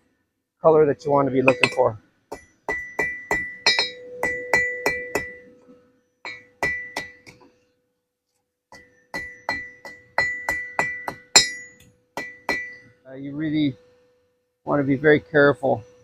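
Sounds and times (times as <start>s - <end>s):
hammer striking steel on anvil: 1.4s - 5.5s, 6.2s - 7.4s, 8.7s - 12.9s.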